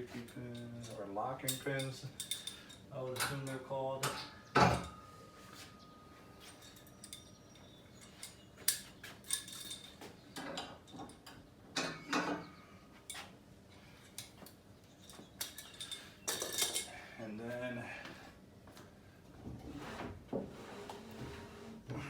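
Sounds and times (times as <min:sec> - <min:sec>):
metal pins clicking and clanking: 0:00.2 - 0:05.0, 0:06.5 - 0:12.5, 0:15.0 - 0:16.9.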